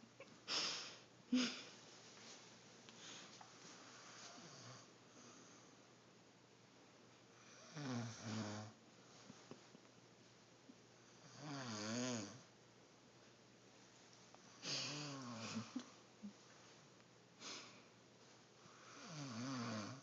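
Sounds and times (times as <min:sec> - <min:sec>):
soft breathing: 0:00.5 - 0:05.9
person snoring: 0:07.5 - 0:08.8, 0:11.2 - 0:12.4, 0:14.6 - 0:15.8, 0:18.8 - 0:20.0.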